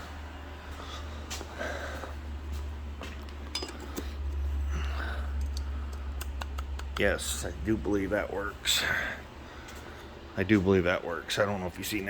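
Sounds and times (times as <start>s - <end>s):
steady low hum: 0.0s - 12.0s
metal hand tools clinking: 3.5s - 4.1s.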